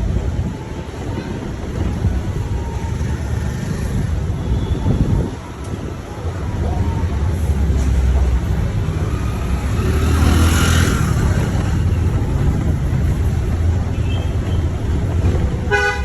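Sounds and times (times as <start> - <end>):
engine and road rumble: 0.0 - 16.0
vehicle passing: 7.5 - 13.6.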